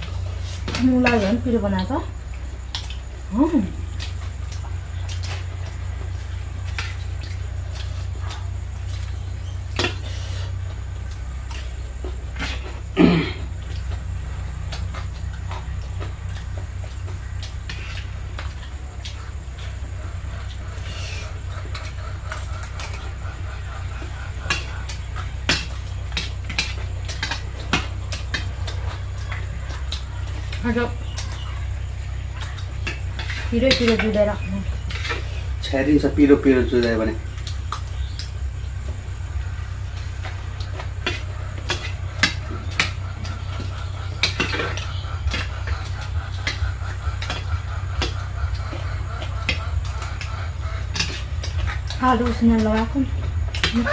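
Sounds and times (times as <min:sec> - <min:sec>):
low hum: 0:00.0 - 0:53.9.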